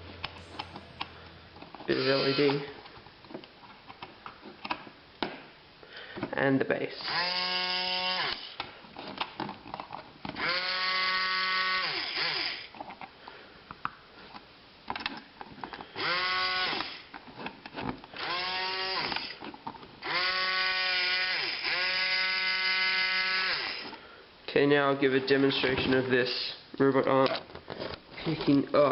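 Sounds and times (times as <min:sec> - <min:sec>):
robotic arm motor whining: 0:20.0 - 0:23.9.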